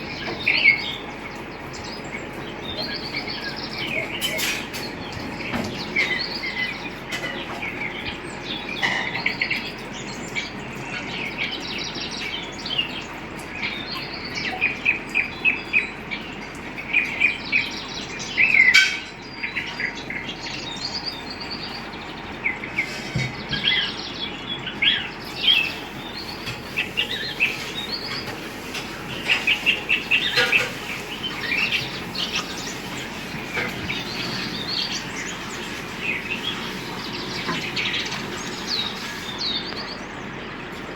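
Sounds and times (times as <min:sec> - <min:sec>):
birds chirping and calling: 0:00.0 - 0:40.9.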